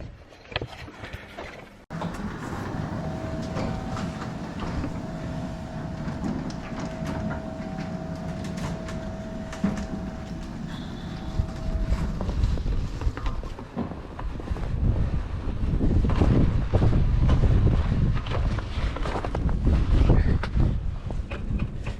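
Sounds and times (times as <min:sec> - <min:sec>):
rattles and clicks: 0:01.4 - 0:13.9
bicycle riding rumble: 0:01.7 - 0:21.9
mid-pitched hum: 0:01.9 - 0:13.5.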